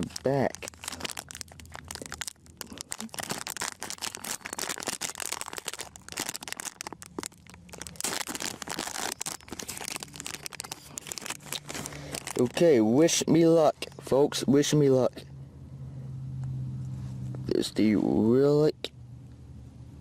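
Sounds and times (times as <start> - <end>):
foil wrapper crinkling: 0.0 - 13.4.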